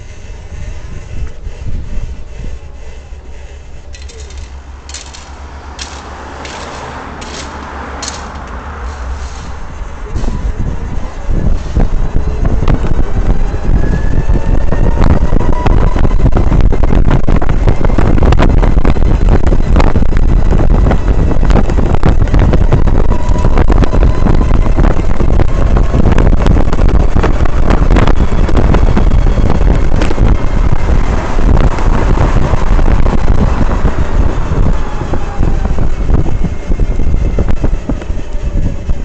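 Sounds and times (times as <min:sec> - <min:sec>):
tricycle rumble: 0:00.0 - 0:39.0
wind buffeting microphone: 0:00.0 - 0:39.0
rattling clicks and knocks: 0:03.9 - 0:08.7.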